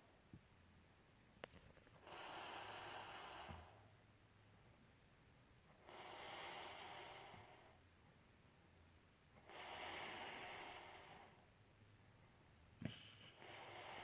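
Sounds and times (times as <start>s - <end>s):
person snoring faintly: 9.4s - 11.4s.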